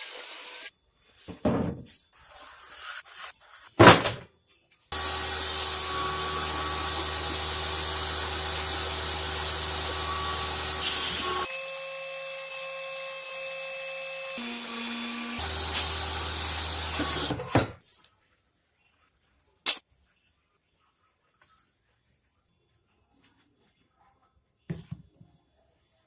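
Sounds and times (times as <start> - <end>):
power tool working wood: 4.9 - 17.5.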